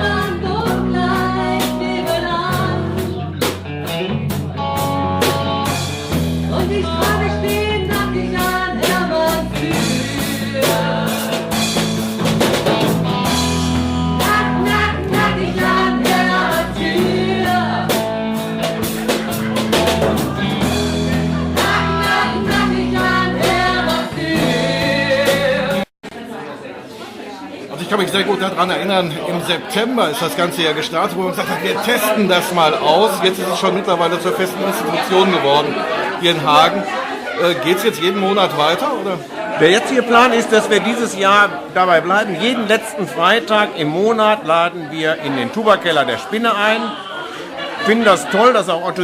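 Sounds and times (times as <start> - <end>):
crowd singing along: 0.0 - 3.5, 6.1 - 26.4, 30.4 - 43.3, 44.6 - 49.0
live rock band playing: 0.0 - 25.9.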